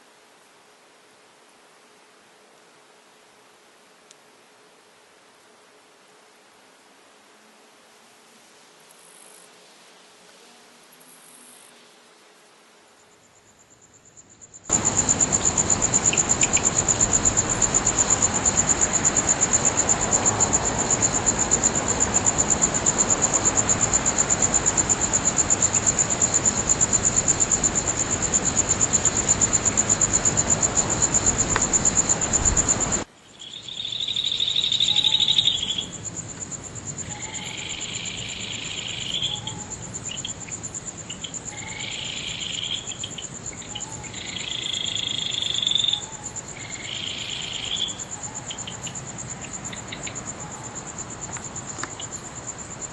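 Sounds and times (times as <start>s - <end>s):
crickets trilling: 7.5s - 52.9s
frogs calling: 14.4s - 36.2s, 36.9s - 52.9s.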